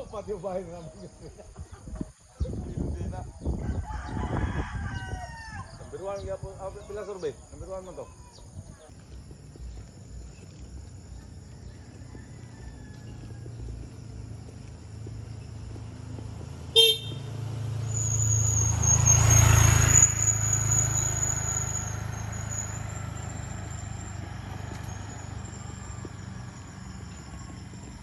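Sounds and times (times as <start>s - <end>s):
motor vehicle passing by: 2.6s - 28.0s
short horn toot: 16.8s - 17.3s.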